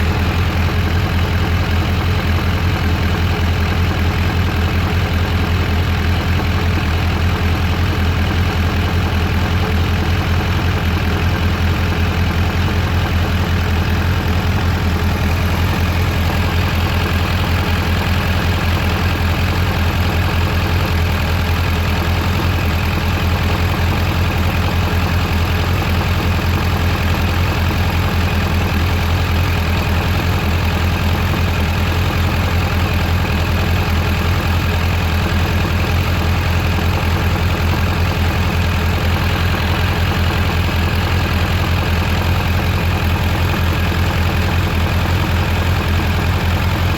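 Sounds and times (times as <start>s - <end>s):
motorcycle engine idling: 0.0s - 46.9s.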